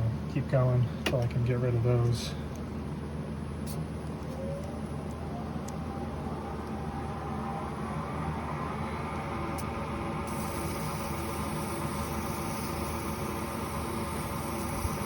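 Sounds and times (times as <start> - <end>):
lathe motor running: 7.2 - 15.0
sandpaper polishing metal: 10.3 - 15.0.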